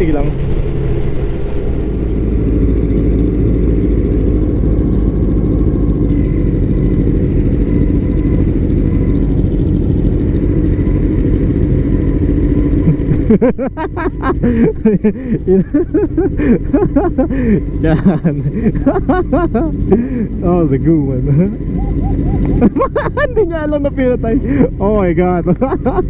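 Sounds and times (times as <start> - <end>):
wind noise: 0.0 - 4.8
motorcycle engine cruising: 0.0 - 26.0.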